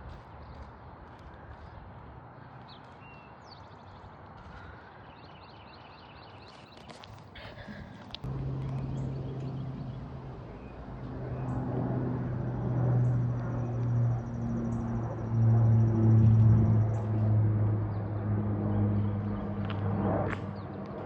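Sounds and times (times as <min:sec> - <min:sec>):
engine drone: 0:07.4 - 0:21.0.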